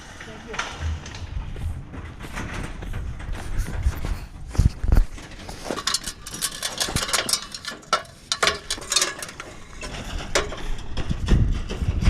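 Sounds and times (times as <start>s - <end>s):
hand tools clattering: 5.1s - 11.8s.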